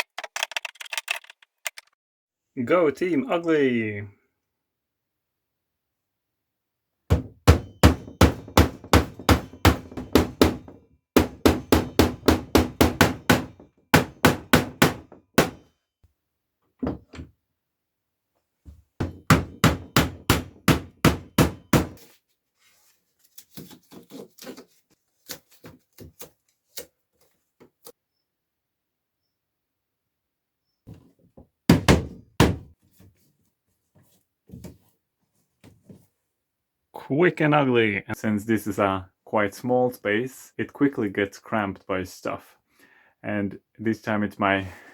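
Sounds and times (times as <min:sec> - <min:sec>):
hammer driving nails: 0:07.1 - 0:15.7, 0:19.0 - 0:22.0.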